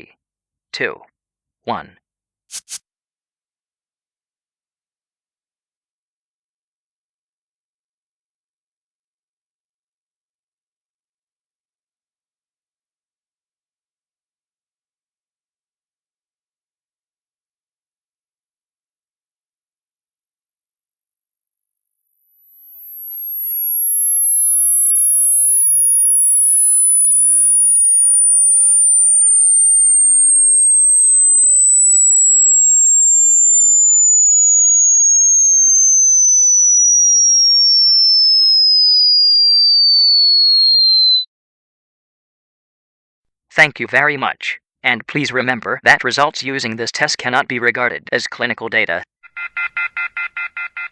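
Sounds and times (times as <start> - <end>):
high-pitched test tone sweep: 12.9 - 41.3.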